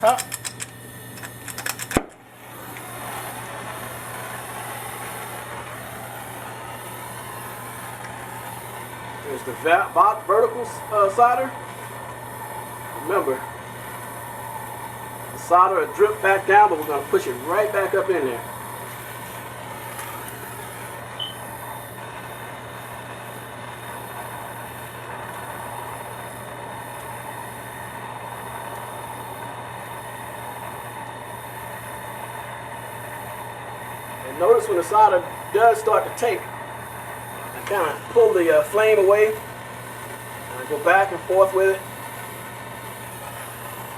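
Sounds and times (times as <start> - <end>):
gas torch flame hissing: 0.0 - 43.9.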